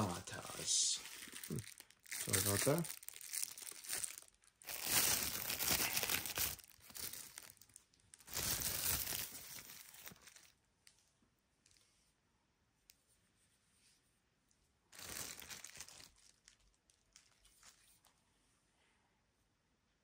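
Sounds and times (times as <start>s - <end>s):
packaging crinkling: 0.0s - 10.6s, 14.9s - 18.1s.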